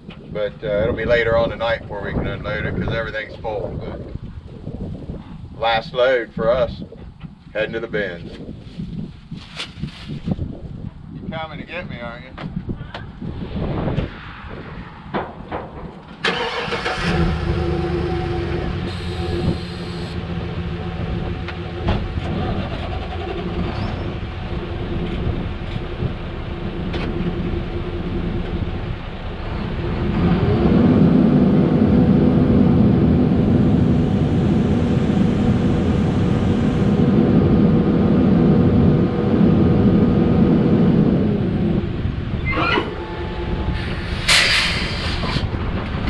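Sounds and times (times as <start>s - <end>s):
truck engine running: 15.4s - 46.0s.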